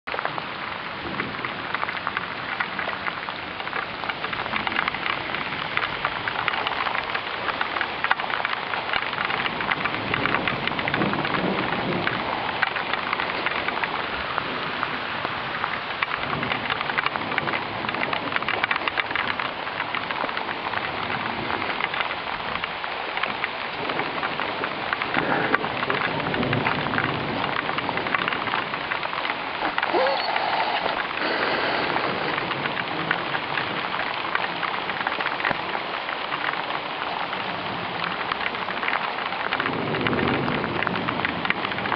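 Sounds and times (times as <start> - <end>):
heavy rain pouring: 0.1 - 41.9
thunder rumbles: 9.1 - 15.1, 23.8 - 35.7, 37.4 - 41.9.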